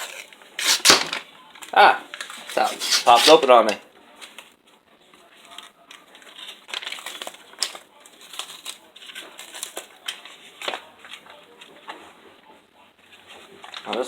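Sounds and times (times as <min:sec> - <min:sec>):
paper wrapper crinkling: 0:00.0 - 0:01.2, 0:02.1 - 0:03.4, 0:06.2 - 0:10.7.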